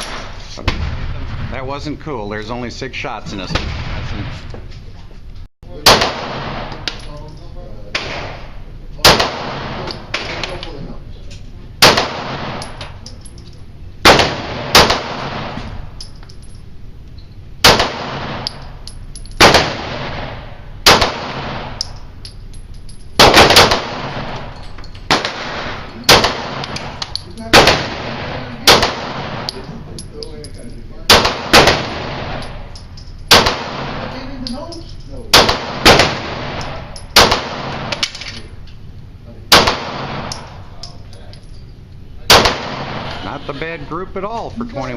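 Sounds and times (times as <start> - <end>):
handgun shots: 14.0 - 15.7, 19.4 - 22.0, 23.2 - 29.6, 31.1 - 32.6, 33.3 - 34.1, 35.3 - 38.3, 39.5 - 40.5.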